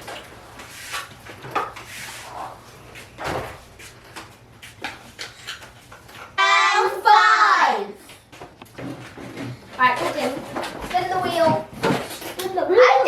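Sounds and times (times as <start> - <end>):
kitchen items knocking and clicking: 8.3 - 12.7.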